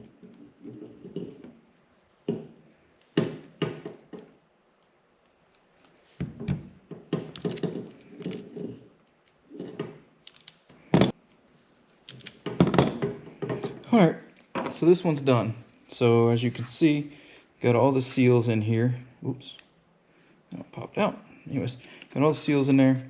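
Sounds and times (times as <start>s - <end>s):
handling noise: 5.3s - 16.8s.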